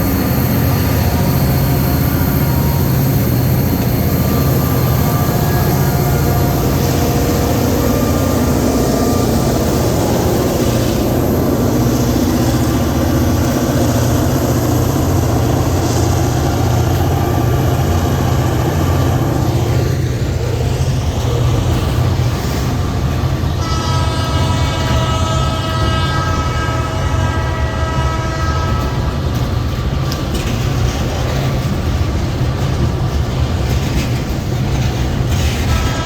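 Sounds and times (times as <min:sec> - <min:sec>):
locomotive air horn: 0:00.0 - 0:19.8, 0:21.2 - 0:29.3, 0:35.3 - 0:36.0
diesel locomotive engine rumble: 0:00.0 - 0:36.0.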